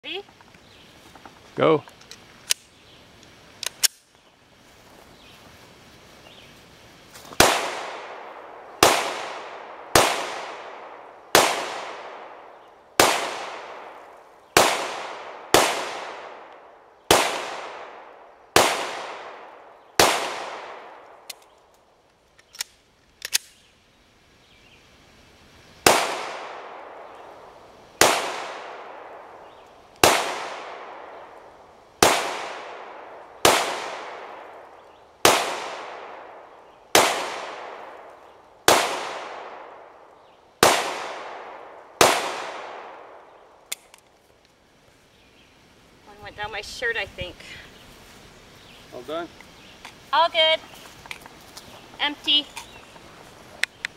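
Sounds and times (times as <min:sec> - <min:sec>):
pistol shots with echo: 0:07.4 - 0:14.0, 0:14.6 - 0:21.0, 0:25.8 - 0:27.3, 0:28.0 - 0:31.3, 0:32.0 - 0:34.6, 0:35.2 - 0:38.0, 0:38.7 - 0:39.9, 0:40.6 - 0:43.2.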